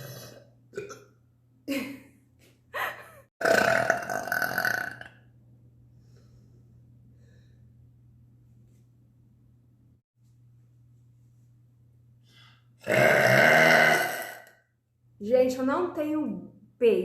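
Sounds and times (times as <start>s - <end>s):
woman burping: 0.0s - 2.0s, 2.8s - 5.1s, 12.8s - 14.5s.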